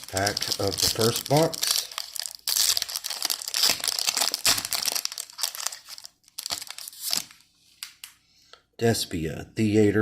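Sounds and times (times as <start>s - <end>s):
foil wrapper tearing: 0.0s - 7.4s
foil wrapper crinkling: 0.0s - 8.0s.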